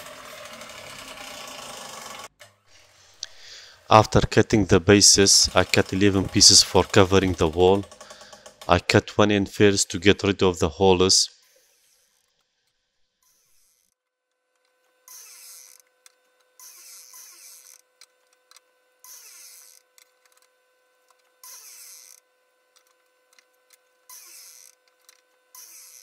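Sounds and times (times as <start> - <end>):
saw blade whine spinning down: 0.0 - 2.3, 4.0 - 9.0
steady electrical hum: 0.0 - 11.5
miter saw cutting wood: 0.0 - 12.2, 15.0 - 15.9, 16.5 - 17.9, 19.0 - 20.0, 21.3 - 26.0.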